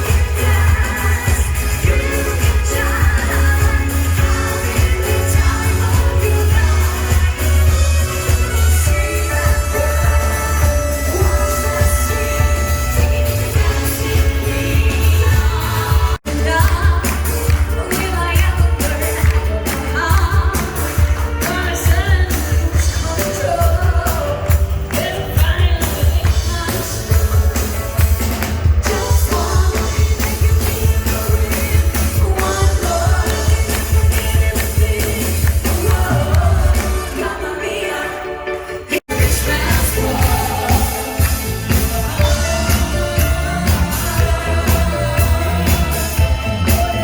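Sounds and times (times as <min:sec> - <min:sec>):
pop song with sung vocal: 0:00.0 - 0:47.0
heavy bass line: 0:39.1 - 0:47.0.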